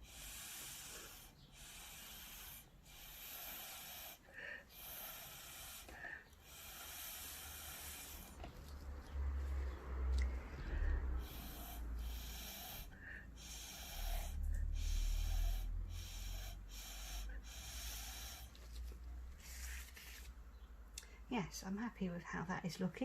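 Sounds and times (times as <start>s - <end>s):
hissing puffs of air: 0.0s - 8.4s, 10.2s - 18.5s.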